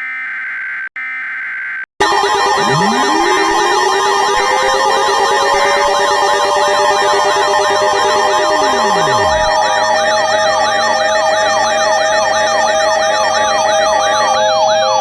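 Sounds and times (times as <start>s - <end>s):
fast high warble: 2.0s - 9.8s
long falling tone: 2.0s - 9.9s
yelping siren: 2.0s - 10.2s
steady alarm tones: 2.0s - 13.0s.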